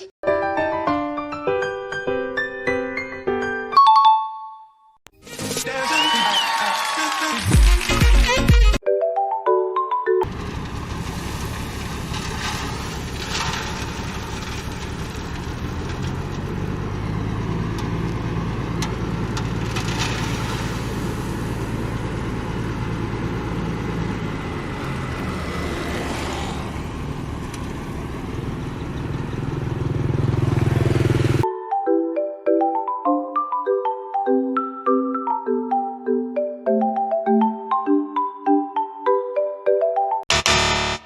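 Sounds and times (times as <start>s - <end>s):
construction machine engine: 10.2s - 31.4s.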